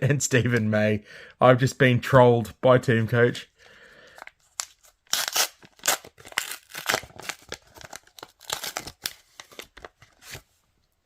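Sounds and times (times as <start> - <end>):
wrapper tearing and crinkling: 4.4 - 10.4.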